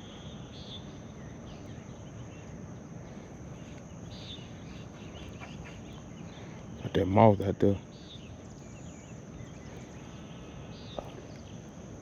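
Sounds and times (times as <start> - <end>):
short insect chirps: 0.0 - 6.9.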